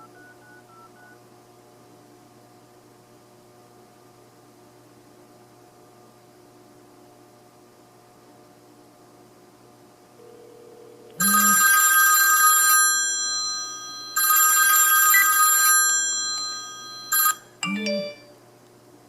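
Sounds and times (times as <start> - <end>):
phone ringing electronic ringtone: 10.2 - 18.4.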